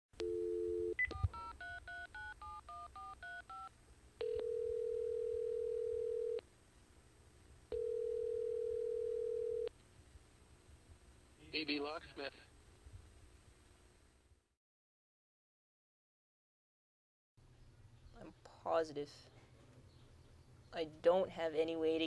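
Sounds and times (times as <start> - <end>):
telephone dial tone: 0.2 - 6.4, 7.7 - 9.7
telephone ringback tone: 0.2 - 6.4, 7.7 - 9.7.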